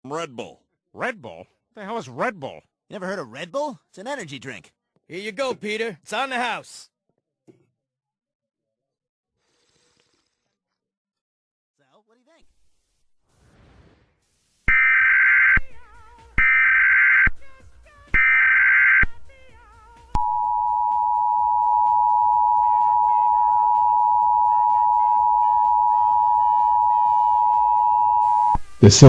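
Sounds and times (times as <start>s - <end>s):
two-tone attention signal: 20.2s - 28.6s.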